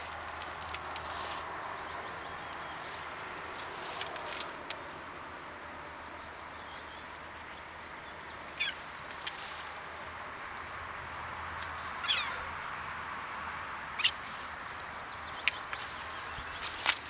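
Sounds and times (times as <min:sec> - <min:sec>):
outdoor background hiss: 0:00.0 - 0:17.0
cat mewing: 0:11.9 - 0:12.5.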